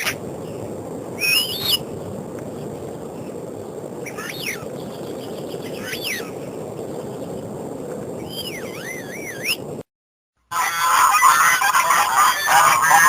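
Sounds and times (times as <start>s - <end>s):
whistled bird calls: 1.2s - 1.8s, 4.0s - 6.3s, 8.2s - 9.7s.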